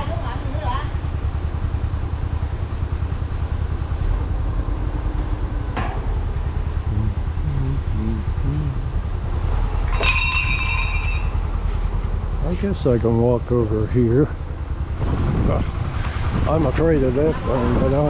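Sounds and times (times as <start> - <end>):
piling rig engine running: 0.0 - 18.0
metal clang ringing: 9.9 - 11.5.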